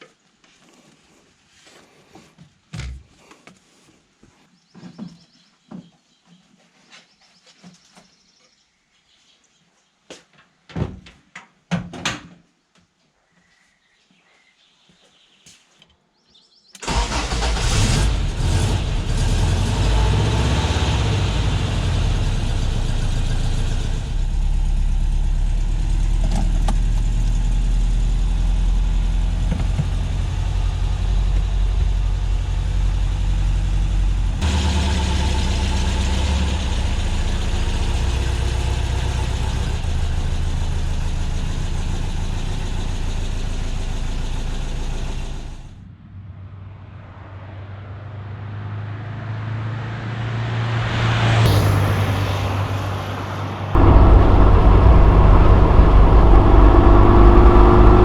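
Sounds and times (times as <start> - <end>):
car engine droning: 16.8 - 45.8, 49.1 - 58.0.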